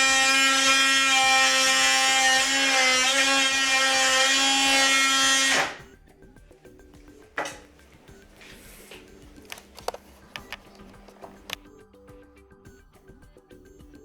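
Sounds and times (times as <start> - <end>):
oscillating multi-tool buzzing: 0.0 - 5.8.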